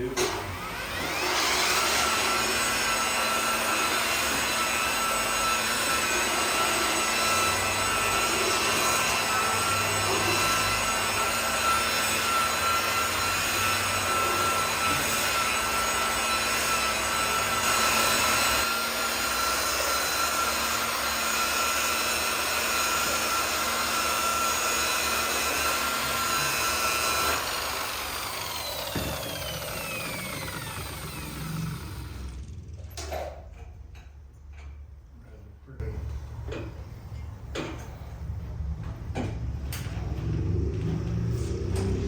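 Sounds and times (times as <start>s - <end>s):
electric polisher whining: 0.2s - 33.1s.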